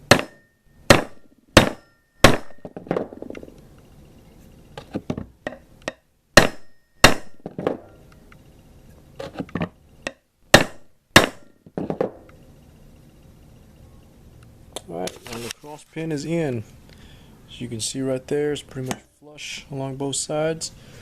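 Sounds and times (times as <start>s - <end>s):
hammer striking metal pin: 0.0s - 2.9s, 5.4s - 7.6s, 10.1s - 11.6s.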